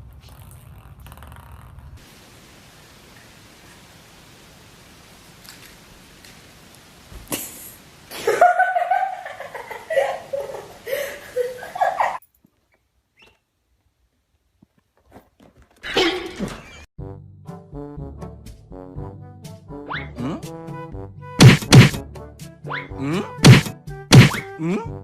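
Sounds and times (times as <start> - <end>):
music: 17.0 - 25.0.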